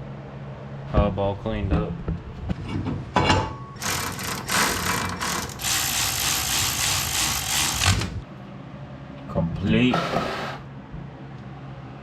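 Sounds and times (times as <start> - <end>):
power tool rattling: 3.8 - 8.2.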